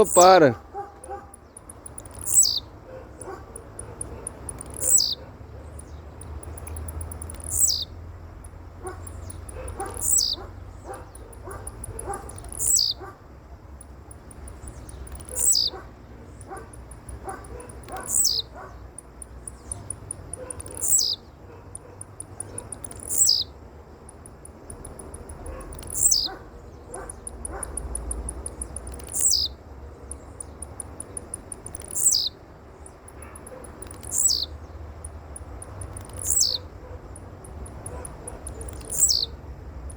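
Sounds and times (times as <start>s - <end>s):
bird calling: 0.0s - 1.3s, 2.1s - 5.4s, 7.4s - 8.0s, 8.8s - 13.2s, 14.7s - 18.8s, 19.6s - 23.5s, 25.0s - 29.6s, 31.5s - 32.4s, 33.1s - 34.6s, 35.9s - 36.7s, 37.5s - 39.4s
soft clicks: 27.0s - 29.4s, 30.4s - 32.0s, 32.8s - 34.2s, 35.0s - 36.4s, 37.1s - 39.2s.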